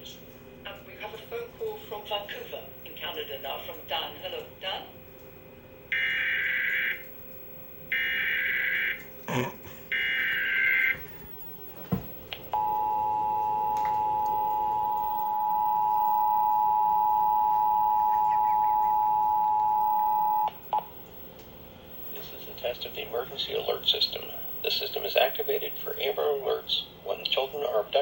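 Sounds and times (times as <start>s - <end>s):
two-tone attention signal: 12.6s - 20.8s.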